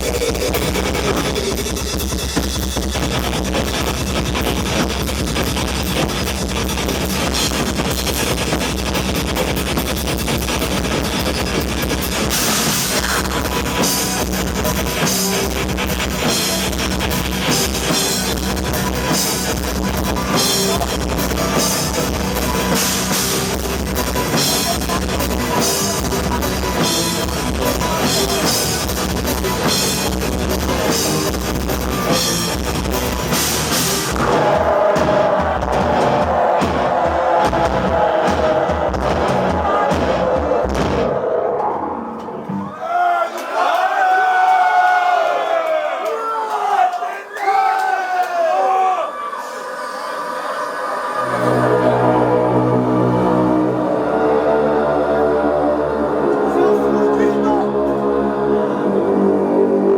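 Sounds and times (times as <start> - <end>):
fast drumming: 0.0 - 41.2
distorted guitar and bass: 0.0 - 42.8, 51.2 - 59.9
keyboards: 49.9 - 59.9.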